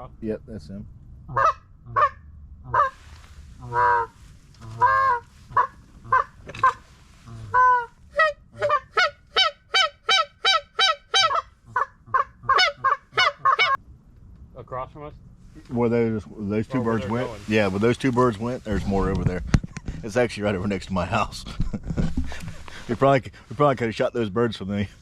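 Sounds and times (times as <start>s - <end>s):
goose call honks: 1.3s - 3.0s, 3.6s - 13.8s.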